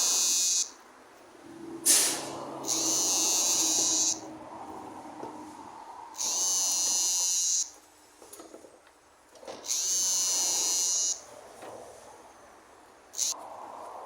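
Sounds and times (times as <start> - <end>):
power tool whining: 2.6 - 4.3.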